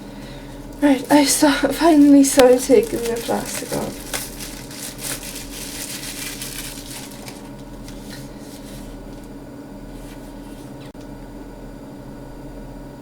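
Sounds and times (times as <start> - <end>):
plastic shrink-wrap crinkling: 0.0 - 9.3.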